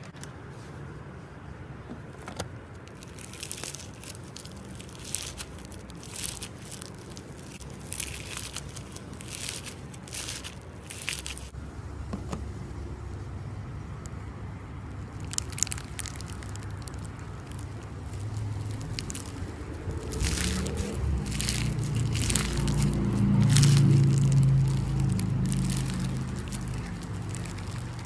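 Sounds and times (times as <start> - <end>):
slime crackling under hands: 2.8 - 11.6, 15.0 - 28.0.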